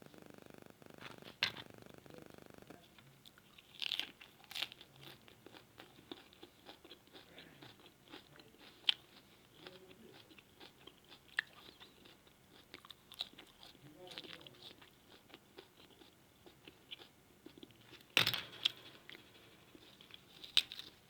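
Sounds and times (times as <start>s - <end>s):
chewing and biting clicks: 3.3s - 18.0s.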